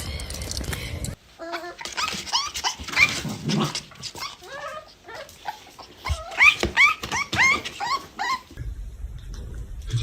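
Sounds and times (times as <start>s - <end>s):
dog whining yips: 1.4s - 3.4s, 4.1s - 8.6s.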